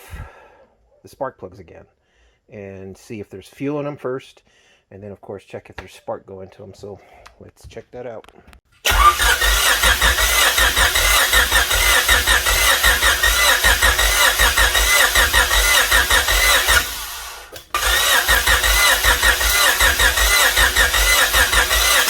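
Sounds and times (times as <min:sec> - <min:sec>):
starter cranking car engine: 0:08.8 - 0:22.0.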